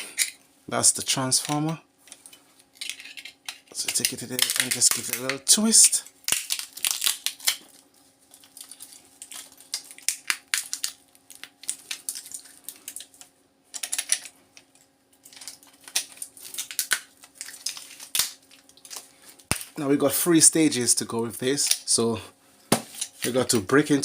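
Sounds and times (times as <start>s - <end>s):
hard plastic clicking and cracking: 2.8s - 5.4s.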